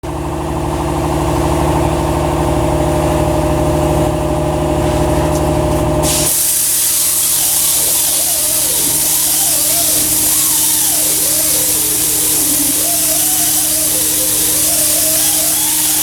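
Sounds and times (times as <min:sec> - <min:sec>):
mechanical motor hum: 0:00.0 - 0:16.0
loud hiss of air: 0:06.0 - 0:16.0.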